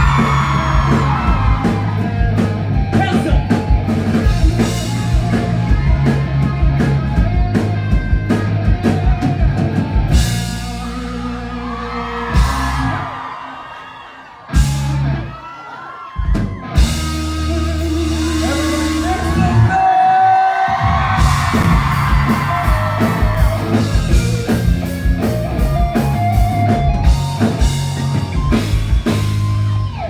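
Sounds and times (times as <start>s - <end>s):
audience cheering and screaming: 0.0s - 7.0s, 10.1s - 30.0s
live rock band playing: 0.0s - 13.3s, 14.4s - 15.5s, 16.2s - 20.0s, 20.7s - 30.0s
drum kit hits: 20.8s - 29.7s.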